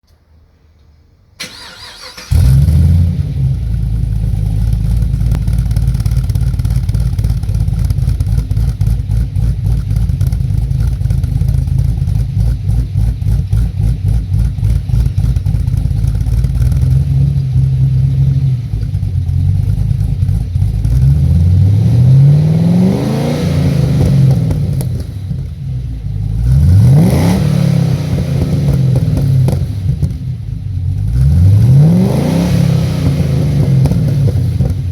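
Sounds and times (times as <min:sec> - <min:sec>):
engine revving: 0:01.4 - 0:34.9
car engine lumpy idle: 0:02.3 - 0:22.1, 0:23.6 - 0:26.8, 0:27.7 - 0:31.6, 0:33.0 - 0:34.9.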